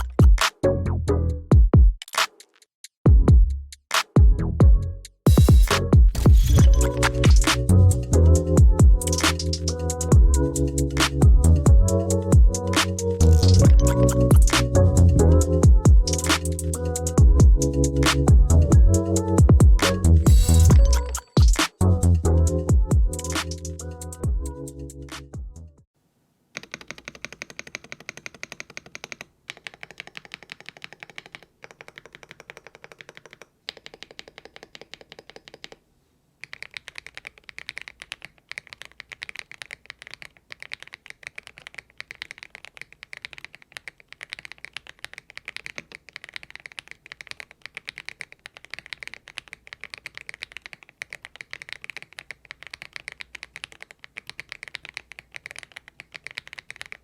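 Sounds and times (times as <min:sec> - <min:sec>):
fast typing on mechanical keyboard: 0:06.3 - 0:07.7, 0:08.4 - 0:11.2, 0:11.8 - 0:14.8, 0:15.5 - 0:18.3, 0:26.6 - 0:35.8, 0:36.4 - 0:57.0.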